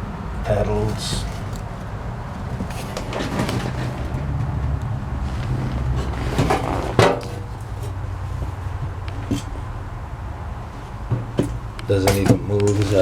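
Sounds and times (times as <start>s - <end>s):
low steady rumble: 0.0s - 13.0s
metal knocks and clatter: 0.9s - 9.7s.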